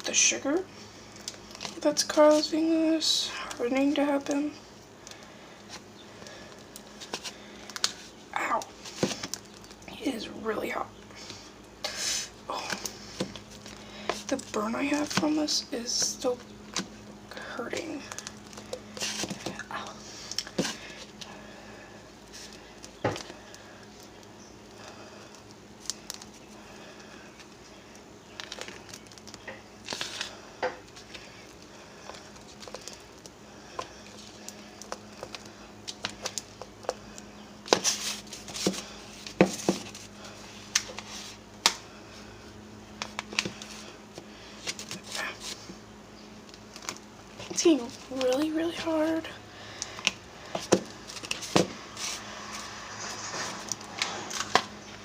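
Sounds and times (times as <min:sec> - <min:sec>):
sticky candy clicks and crackles: 0:16.4 - 0:19.7.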